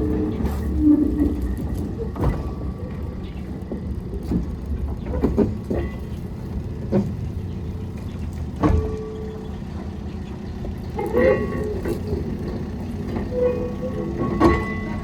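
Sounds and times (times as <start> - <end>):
locomotive and wagons rumbling: 0.0 - 15.0
ringing metal squeal: 11.0 - 12.2, 13.1 - 15.0.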